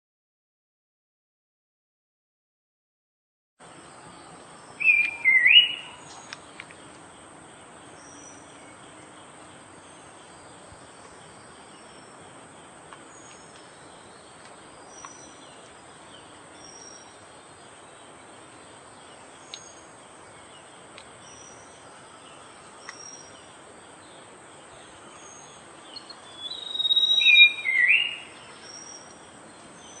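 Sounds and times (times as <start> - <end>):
insect hiss: 3.6 - 30.0
bird whistled song: 4.6 - 6.4, 25.2 - 29.2
faint high chirps: 24.9 - 29.2.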